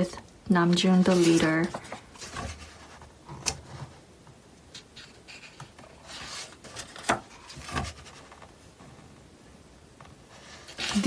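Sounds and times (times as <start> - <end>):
book pages rustling: 0.7 - 4.0, 4.7 - 8.6, 10.3 - 11.0
sharp paper flaps: 10.7 - 11.0.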